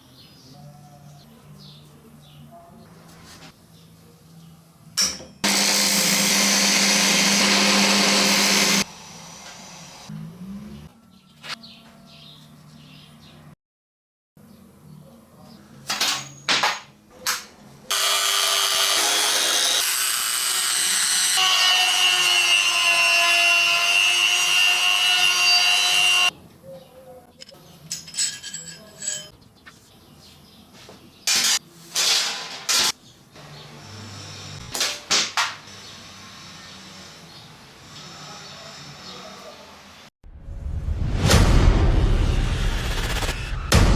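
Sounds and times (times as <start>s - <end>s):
power tool whining: 5.4s - 10.2s, 17.9s - 26.3s.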